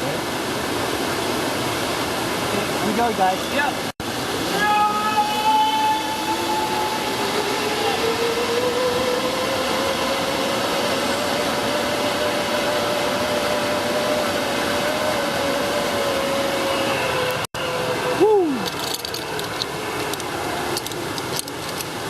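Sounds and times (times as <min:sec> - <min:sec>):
higher whine: 0:04.0 - 0:20.8
zip line pulleys whirring on cable: 0:04.2 - 0:22.0
wind rushing: 0:05.9 - 0:17.2.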